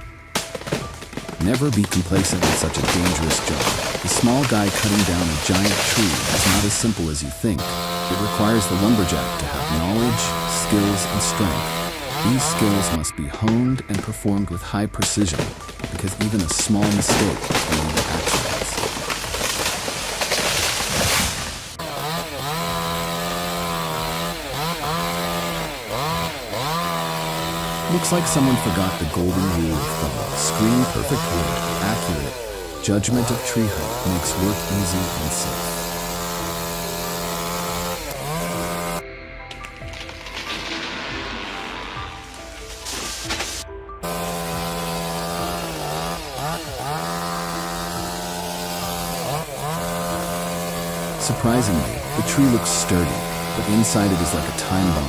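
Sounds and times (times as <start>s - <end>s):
chainsaw revving: 0.4s - 14.1s, 15.1s - 39.0s, 40.3s - 55.0s
loud crackling rush: 0.8s - 7.0s, 15.5s - 22.1s.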